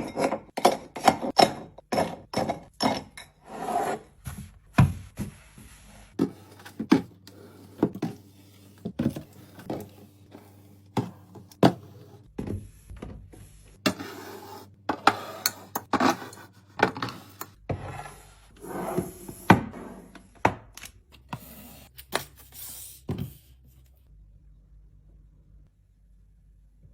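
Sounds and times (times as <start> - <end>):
groceries knocking and clinking: 0.0 - 3.4, 6.2 - 14.1
containers scraping on shelves: 3.4 - 4.2, 13.8 - 20.2.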